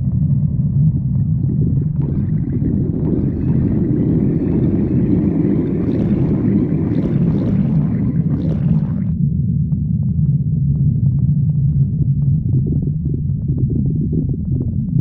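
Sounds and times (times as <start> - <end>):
stomach growling: 0.0 - 9.2
constant low rumble: 0.0 - 15.0.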